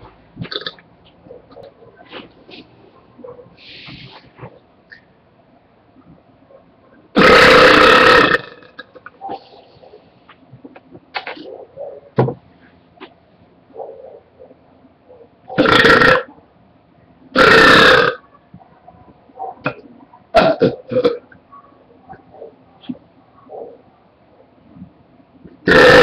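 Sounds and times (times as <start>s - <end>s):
man burping: 7.2s - 8.9s, 15.6s - 16.3s, 17.4s - 18.2s, 20.4s - 21.2s, 25.6s - 26.0s.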